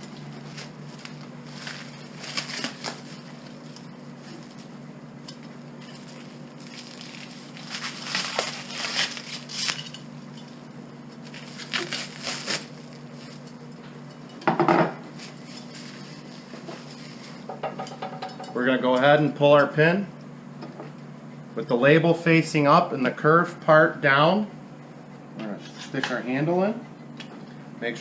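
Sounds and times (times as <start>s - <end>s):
wrapping crinkling and rustling: 0.2s - 4.7s, 5.8s - 13.5s, 15.1s - 17.4s
wrapping crackling: 0.4s - 4.7s, 5.8s - 13.5s.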